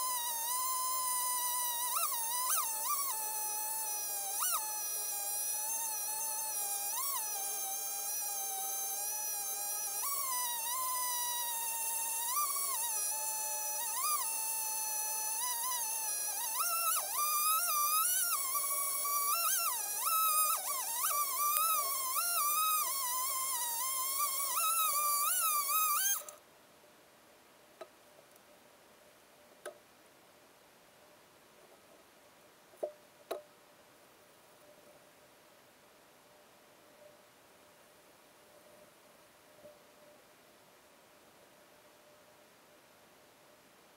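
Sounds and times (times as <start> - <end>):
chainsaw cutting wood: 0.0 - 26.4.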